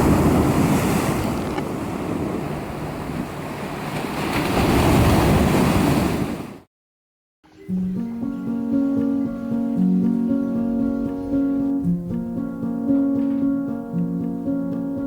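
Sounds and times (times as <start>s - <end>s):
wind buffeting microphone: 0.0s - 6.1s
sea waves breaking on shore: 0.0s - 6.7s.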